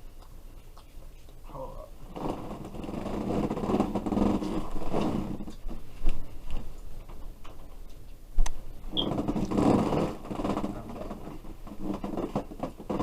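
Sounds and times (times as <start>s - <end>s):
crackly chewing: 0.0s - 8.6s.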